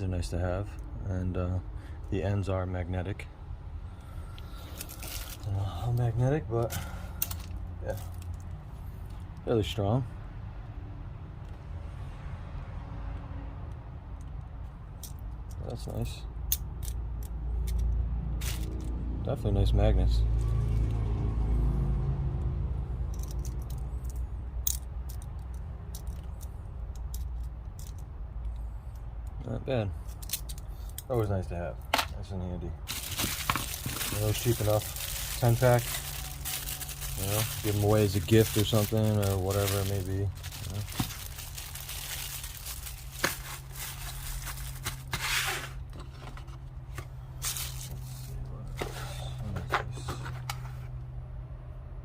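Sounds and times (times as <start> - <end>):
screwdrivers clicking and clinking: 23.2 - 28.1, 30.0 - 31.1
plastic and cardboard rustling: 32.9 - 50.8.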